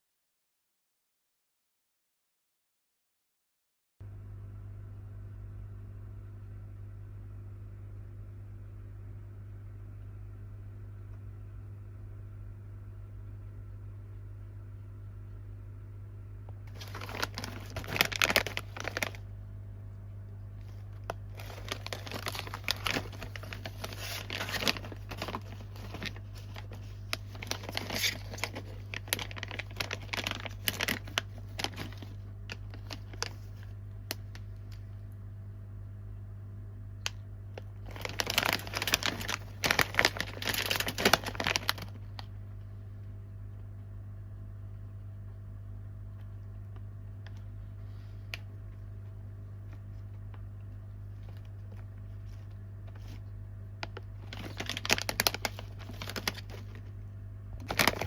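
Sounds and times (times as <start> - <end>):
low hum: 4.0 - 58.0
wrappers crinkling and tearing: 16.7 - 19.3, 20.6 - 34.8, 37.6 - 42.3, 49.6 - 57.0, 57.6 - 58.0.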